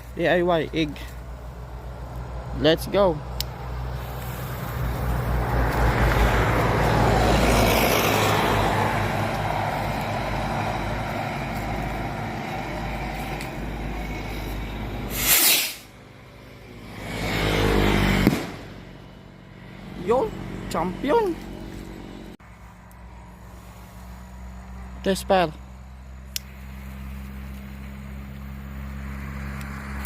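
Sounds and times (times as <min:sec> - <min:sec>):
firework hissing: 0:03.9 - 0:05.3, 0:14.3 - 0:16.0
sharp burst of noise: 0:15.1 - 0:15.9.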